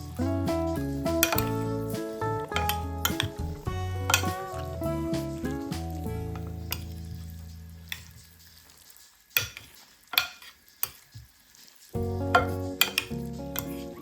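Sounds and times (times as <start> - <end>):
background music: 0.0 - 8.2, 12.0 - 14.0
faint frying sizzle: 0.2 - 14.0.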